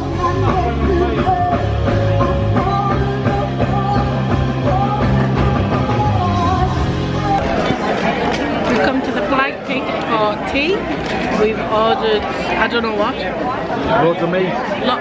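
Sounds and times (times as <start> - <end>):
rock music with singing: 0.0 - 7.8.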